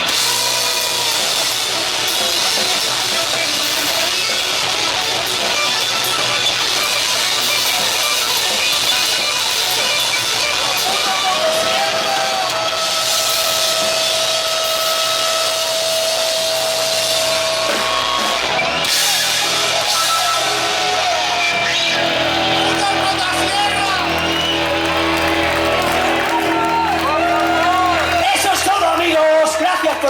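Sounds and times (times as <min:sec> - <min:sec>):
drum kit with crashing cymbals: 0:00.0 - 0:29.2
distorted electric guitars: 0:00.0 - 0:30.0.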